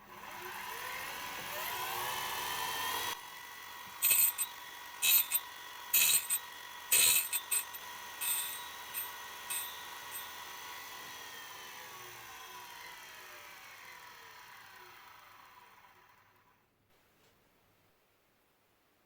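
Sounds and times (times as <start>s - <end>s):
grinding wheel on metal bursts: 3.8s - 11.3s
spindle motor whining: 3.8s - 11.3s.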